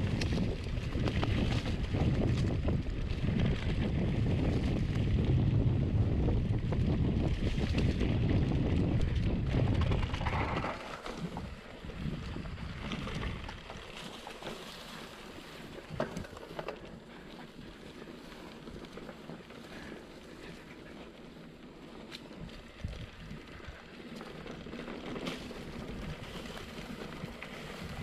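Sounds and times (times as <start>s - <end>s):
wind buffeting microphone: 0.0s - 13.8s, 22.4s - 28.0s
bike rattling on dirt trail: 0.0s - 28.0s.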